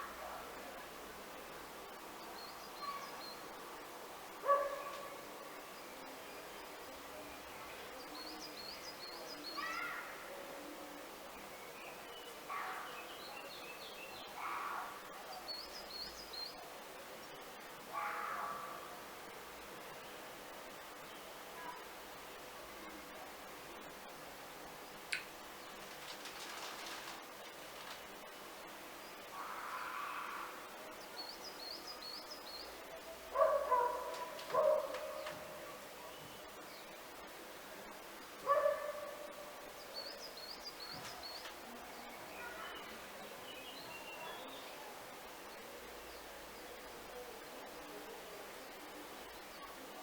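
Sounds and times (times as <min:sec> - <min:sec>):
background hiss: 0:00.0 - 0:50.0
bird chirping: 0:39.7 - 0:44.8.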